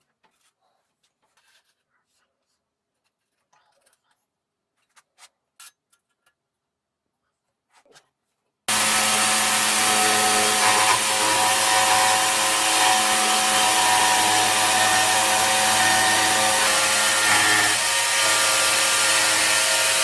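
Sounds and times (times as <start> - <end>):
jigsaw sawing wood: 8.7 - 20.0.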